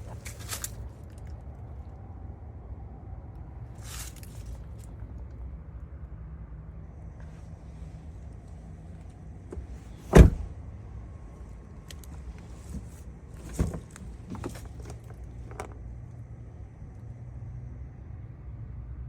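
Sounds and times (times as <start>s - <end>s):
thumps in a car: 9.5s - 10.6s, 12.0s - 15.8s.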